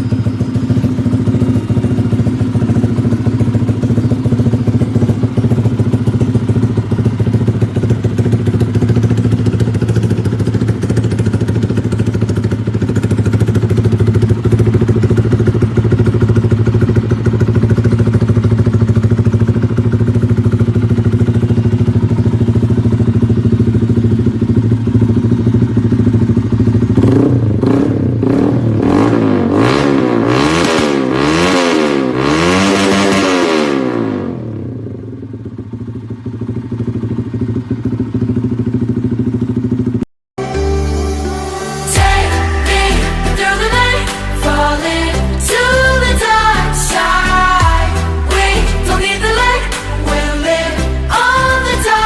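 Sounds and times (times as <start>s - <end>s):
motorcycle engine idling: 0.0s - 29.8s, 33.6s - 40.1s.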